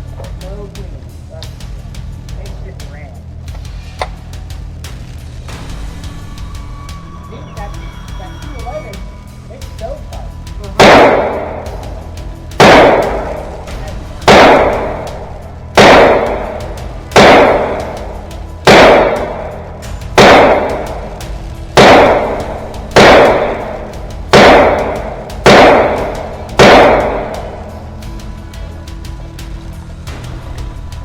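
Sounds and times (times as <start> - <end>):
gunshots with ringing tail: 10.8 - 28.1.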